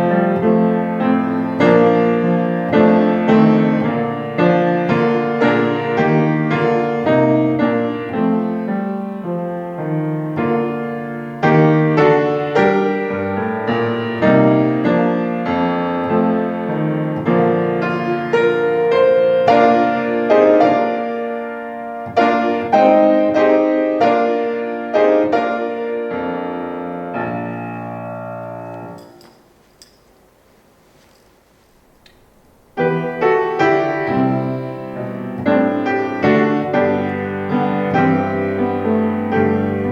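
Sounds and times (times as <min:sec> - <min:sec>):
slow piano chords: 0:00.0 - 0:39.9.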